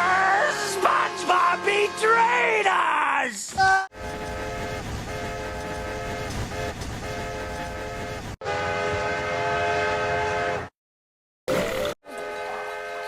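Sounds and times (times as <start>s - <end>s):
train whistle chord: 4.0s - 10.7s, 12.1s - 13.0s.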